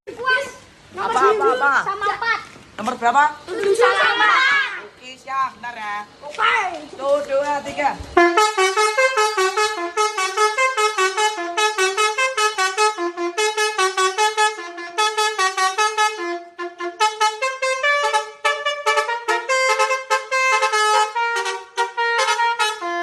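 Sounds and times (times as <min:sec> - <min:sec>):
multi-tone horn playing a melody: 0:08.2 - 0:23.0.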